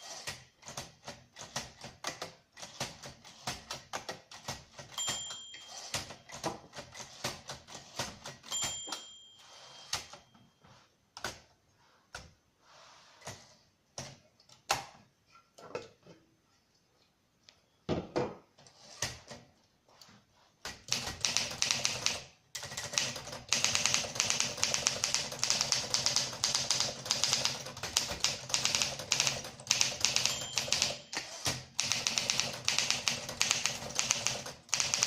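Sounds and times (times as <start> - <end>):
typewriter margin bell ding: 4.8 - 6.4, 8.4 - 10.4, 28.7 - 35.0
typewriter key strikes: 20.9 - 35.0.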